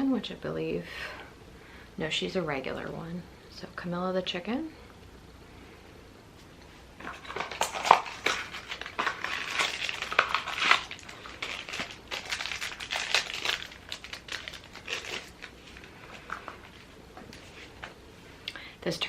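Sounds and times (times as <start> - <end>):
packaging crinkling and rustling: 7.0 - 18.0.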